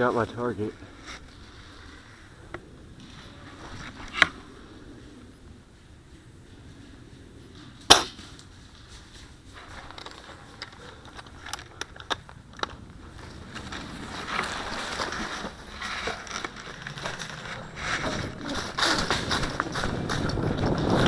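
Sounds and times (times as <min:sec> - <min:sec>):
rustling through dry leaves: 0:12.4 - 0:21.0.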